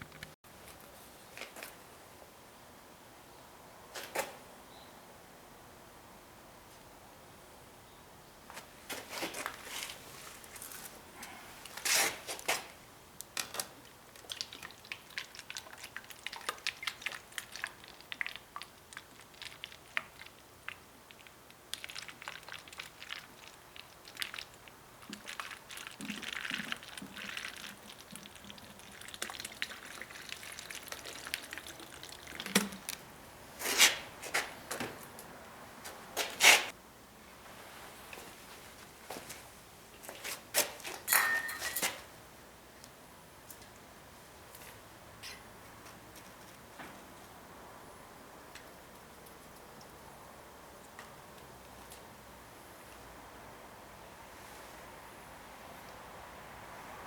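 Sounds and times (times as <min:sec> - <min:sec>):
water dripping: 0:13.8 - 0:33.1
crackling fizz: 0:14.1 - 0:33.1
water pouring: 0:21.8 - 0:33.1.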